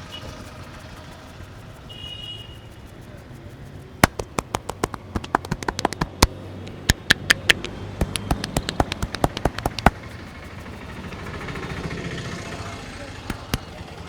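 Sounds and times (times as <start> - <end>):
hand slaps on head: 4.0 - 10.0, 13.3 - 13.7.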